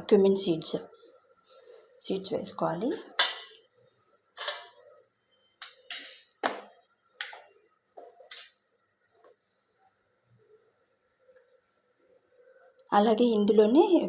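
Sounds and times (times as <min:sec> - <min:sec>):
spoon clinking and scraping utensils: 0:04.4 - 0:04.8, 0:05.6 - 0:06.4, 0:08.2 - 0:08.6.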